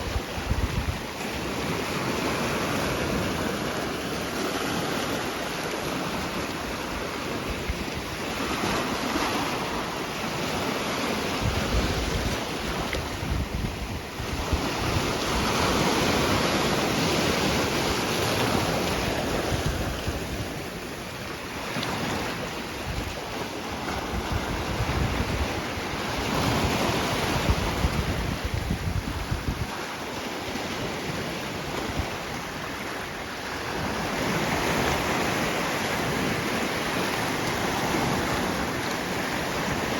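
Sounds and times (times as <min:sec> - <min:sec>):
wind buffeting microphone: 0:00.0 - 0:30.0
sea waves washing on shore: 0:00.0 - 0:39.9.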